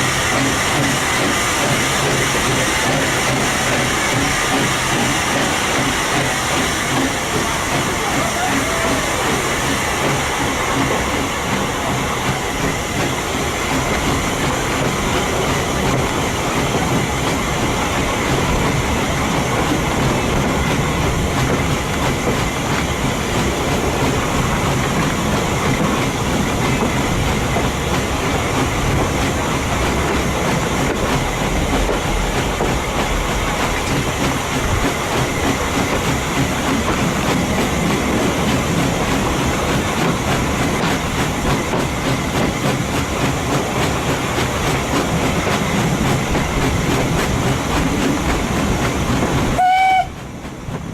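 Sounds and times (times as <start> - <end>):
train carriage rumble: 0.0 - 50.9.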